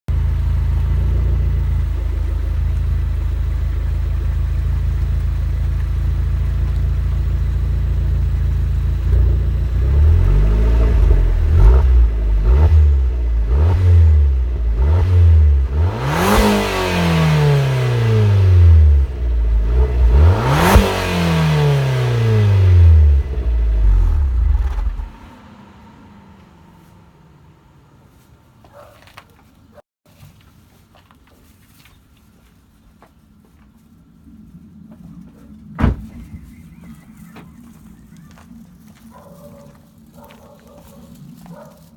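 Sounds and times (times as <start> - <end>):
car engine idling and revving: 0.1 - 29.2.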